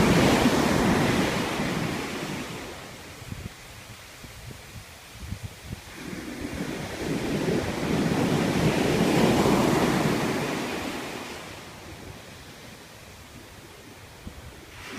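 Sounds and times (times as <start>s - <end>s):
ocean wave breaking: 0.0s - 3.0s, 5.9s - 12.9s, 14.4s - 14.9s.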